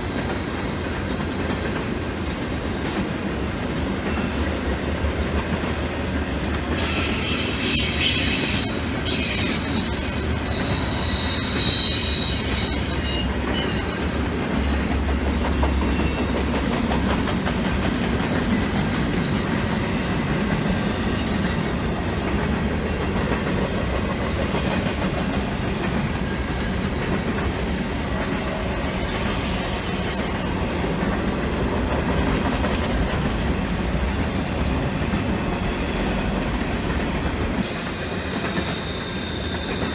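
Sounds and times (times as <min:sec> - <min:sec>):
train wheels rumbling on rail: 0:00.0 - 0:39.9
high-pitched wheel squeals: 0:06.8 - 0:16.4, 0:24.6 - 0:30.7, 0:38.5 - 0:39.9.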